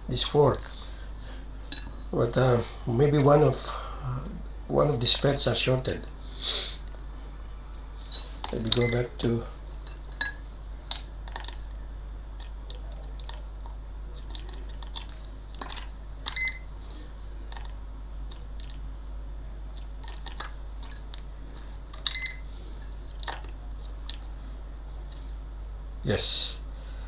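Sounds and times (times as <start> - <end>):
multimeter beeping: 8.1 - 9.3, 16.2 - 16.7, 22.0 - 22.5
test probes clicking: 8.1 - 11.8, 12.4 - 16.7, 21.9 - 22.4.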